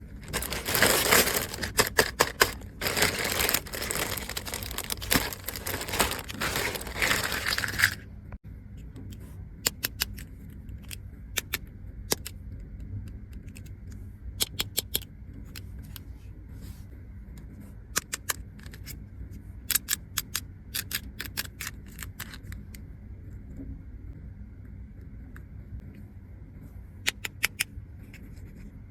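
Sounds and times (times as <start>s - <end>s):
plastic packaging crinkling and tearing: 0.2s - 8.0s.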